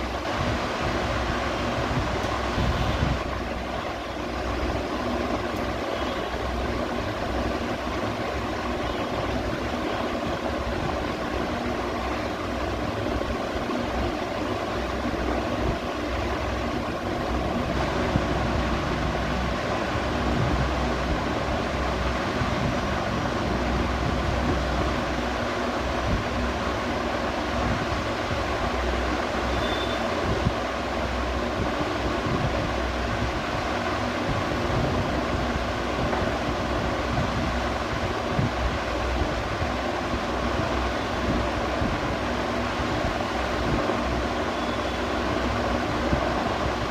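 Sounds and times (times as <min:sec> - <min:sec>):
ceiling fan whirring: 0:00.0 - 0:46.9
faint motor hum: 0:00.0 - 0:46.9.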